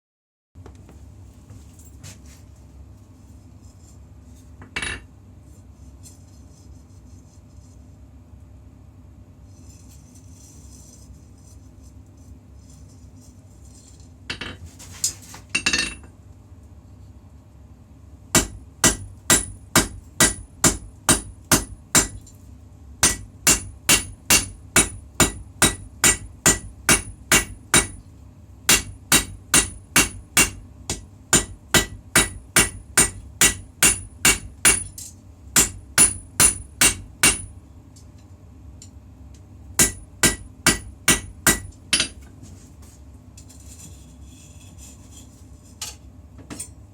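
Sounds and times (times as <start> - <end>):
steady low hum: 0.6 - 46.9
hammer striking steel on anvil: 18.4 - 22.2, 23.0 - 28.0, 28.7 - 37.6, 39.8 - 42.2.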